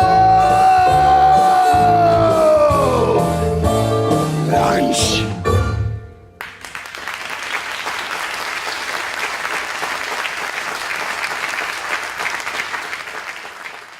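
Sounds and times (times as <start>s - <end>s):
audience applauding: 6.4s - 13.9s.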